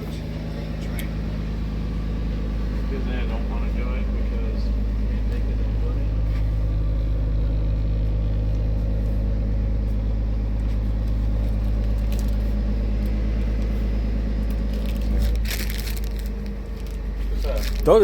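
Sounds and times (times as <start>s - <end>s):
engine idling: 0.0s - 18.0s
rustling handling sounds: 14.5s - 18.0s.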